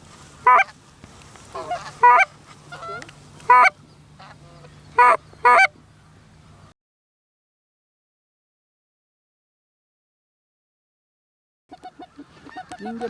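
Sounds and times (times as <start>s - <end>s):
goose clucks and murmurs: 0.4s - 0.8s, 1.4s - 6.7s, 11.7s - 13.0s
goose honking: 0.4s - 0.8s, 1.5s - 5.8s.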